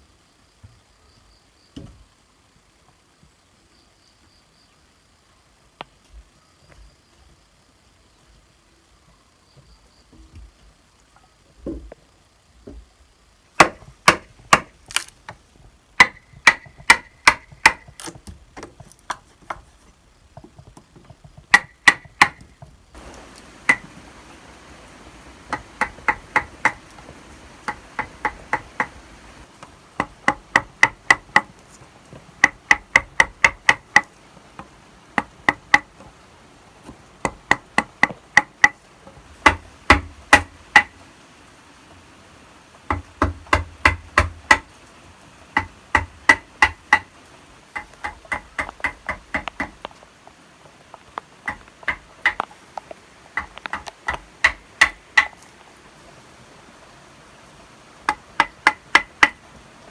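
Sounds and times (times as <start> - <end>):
hammer blows on nails: 16.0 - 18.2, 21.4 - 36.0, 37.2 - 41.0, 42.9 - 44.7, 45.6 - 47.1, 47.8 - 50.0, 51.5 - 52.5, 53.4 - 55.5, 58.1 - 59.4.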